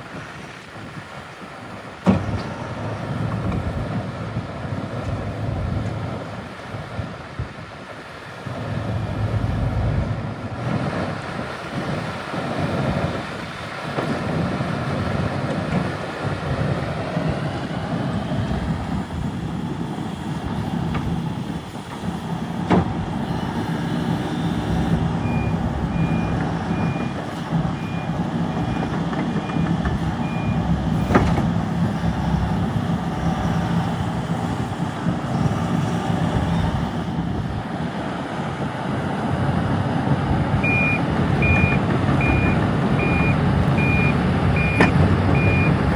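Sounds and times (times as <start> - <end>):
excavator diesel engine running: 0.1 - 45.9
travel alarm beeping: 40.6 - 45.9.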